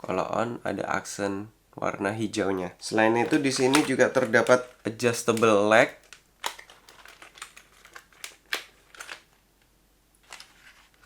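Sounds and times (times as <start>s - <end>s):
keyboard legs snapping: 2.8s - 9.3s
plastic keyboard clicks and taps: 3.1s - 9.2s.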